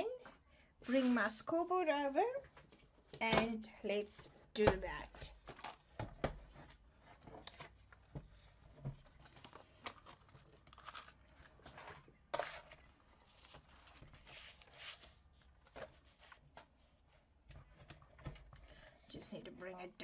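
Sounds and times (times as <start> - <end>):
paper rustling: 6.5 - 18.3.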